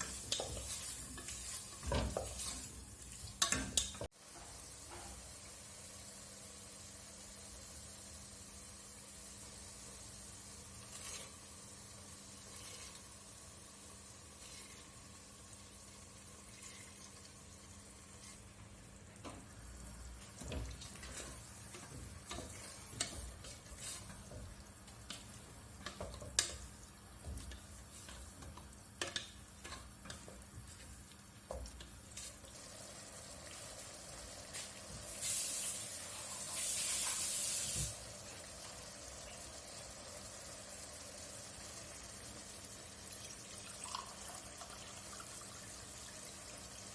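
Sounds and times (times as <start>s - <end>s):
food hissing in a pan: 32.0s - 43.1s.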